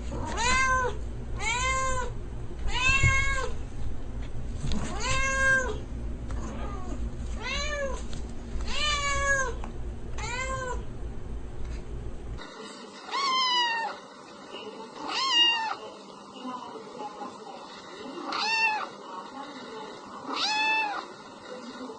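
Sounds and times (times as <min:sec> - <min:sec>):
low background hum: 0:00.0 - 0:21.9
cat meowing: 0:00.2 - 0:02.1, 0:02.7 - 0:03.5, 0:04.9 - 0:05.8, 0:06.4 - 0:08.0, 0:08.7 - 0:09.6, 0:10.2 - 0:10.8, 0:13.1 - 0:14.0, 0:15.0 - 0:15.8, 0:18.3 - 0:18.9, 0:20.3 - 0:21.1.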